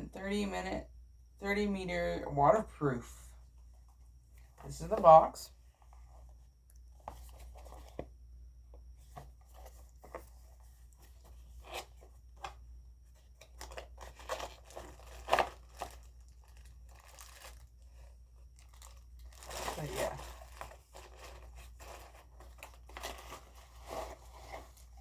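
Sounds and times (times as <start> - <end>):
packaging tearing and crinkling: 13.4 - 24.8.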